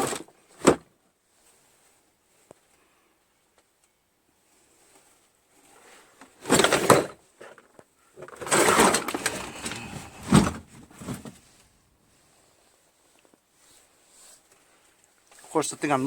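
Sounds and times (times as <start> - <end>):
items clattering and scraping: 5.6 - 11.8.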